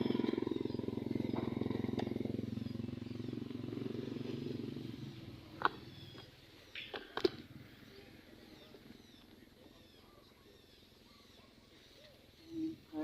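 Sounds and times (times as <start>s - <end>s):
small engine running: 0.0s - 6.3s.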